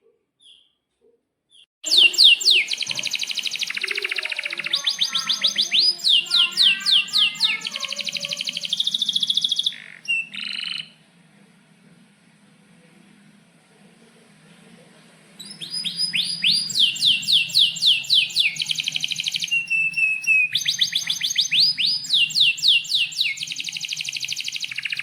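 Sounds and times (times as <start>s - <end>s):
canary singing trills: 1.5s - 11.0s, 15.4s - 25.0s.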